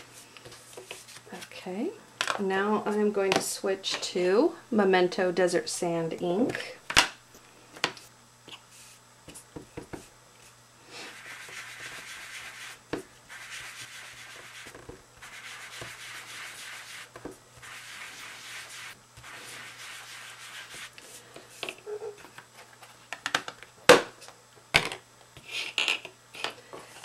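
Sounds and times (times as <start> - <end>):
sponge rubbing on paper: 11.0 - 21.3.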